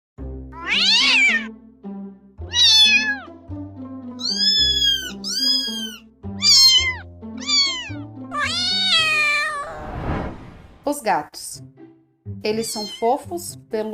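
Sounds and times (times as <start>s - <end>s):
cat meowing: 0.6s - 1.5s, 2.5s - 3.3s, 4.2s - 9.8s, 12.6s - 13.1s.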